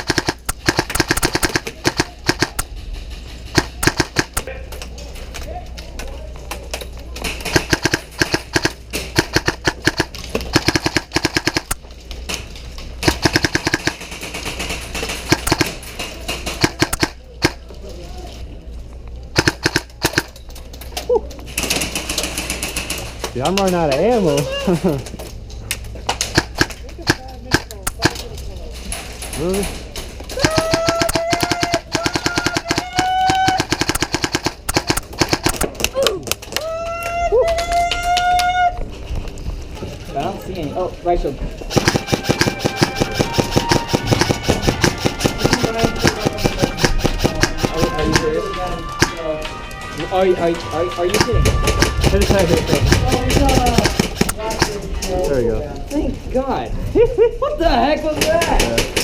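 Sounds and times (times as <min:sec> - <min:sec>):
airsoft guns firing: 0:00.0 - 0:02.7, 0:03.5 - 0:04.5, 0:07.3 - 0:11.8, 0:13.0 - 0:17.6, 0:19.3 - 0:20.4, 0:26.2 - 0:28.2, 0:30.3 - 0:35.9, 0:41.7 - 0:48.4, 0:51.1 - 0:54.8.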